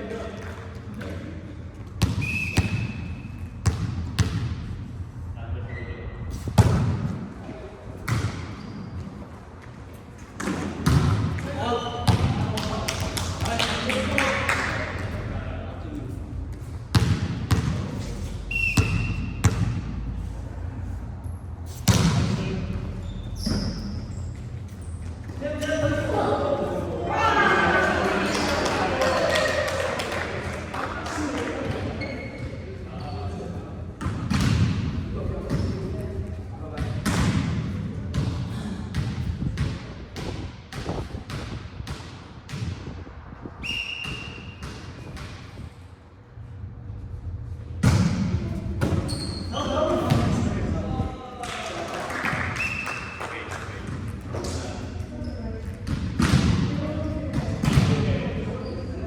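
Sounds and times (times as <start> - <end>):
referee whistle: 2.2 - 3.0, 18.5 - 19.4, 43.6 - 44.6
volleyball hits: 47.8 - 49.1, 55.9 - 58.1.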